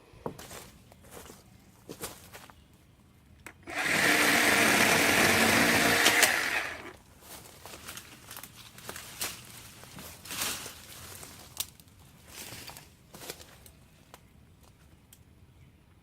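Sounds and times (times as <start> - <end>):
electric chainsaw cutting wood: 3.6 - 7.0.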